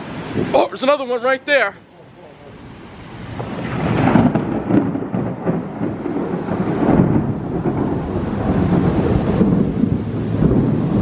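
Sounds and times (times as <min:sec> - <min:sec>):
rain: 0:00.0 - 0:11.0
thunder rolling: 0:02.5 - 0:11.0.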